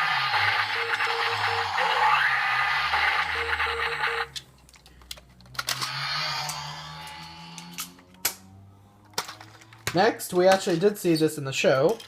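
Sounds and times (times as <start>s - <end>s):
toy speaker sound effect: 0.0s - 4.4s
faint electronic tones: 0.3s - 4.3s.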